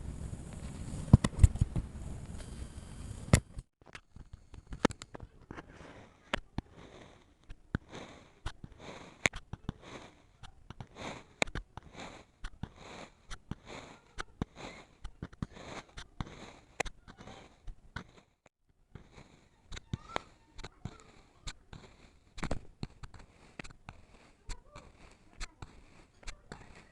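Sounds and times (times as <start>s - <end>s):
sand being cut and crushed: 5.7s - 18.4s, 19.0s - 26.9s.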